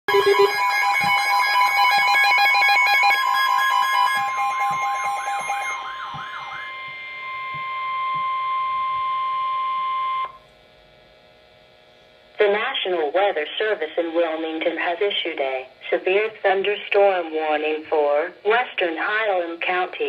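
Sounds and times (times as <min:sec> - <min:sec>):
electronic beeping: 0:00.1 - 0:10.4
loud steady alert tone: 0:00.1 - 0:10.4
wailing siren warble: 0:00.1 - 0:10.4.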